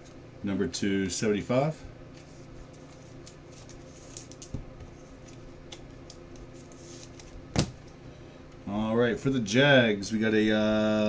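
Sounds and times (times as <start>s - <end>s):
steady low hum: 0.0s - 11.0s
trading cards sliding: 6.4s - 7.4s.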